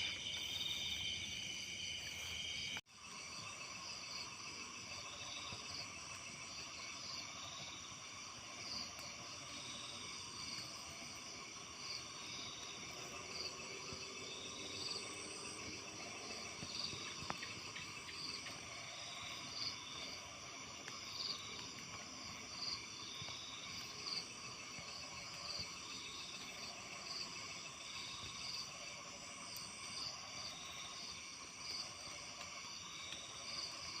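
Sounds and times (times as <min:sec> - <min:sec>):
crickets and insects trilling: 0:00.0 - 0:34.0
pulsing insect call: 0:00.0 - 0:34.0.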